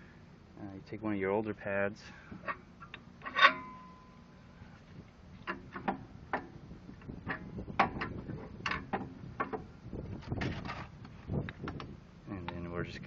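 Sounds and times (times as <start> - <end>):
metal clicks and knocks: 7.2 - 9.6.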